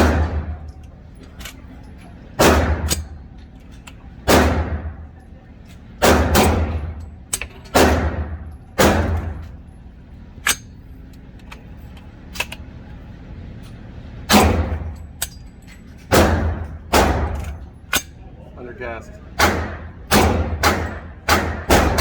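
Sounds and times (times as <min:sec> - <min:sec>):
pistol shots echoing: 0:00.0 - 0:00.6, 0:02.4 - 0:03.2, 0:04.3 - 0:05.0, 0:06.0 - 0:07.0, 0:07.7 - 0:09.5, 0:16.1 - 0:17.5, 0:19.4 - 0:22.0.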